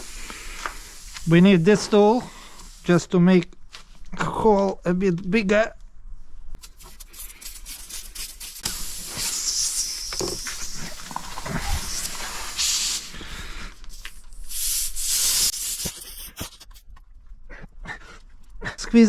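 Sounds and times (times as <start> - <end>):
air hissing out of tyre: 0.0 - 3.1, 6.6 - 16.7.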